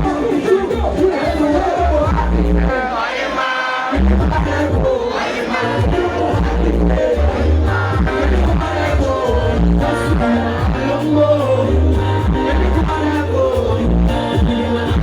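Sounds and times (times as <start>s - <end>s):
loud band with pulsing bass: 0.0s - 3.1s, 3.8s - 15.0s
person singing: 3.9s - 15.0s.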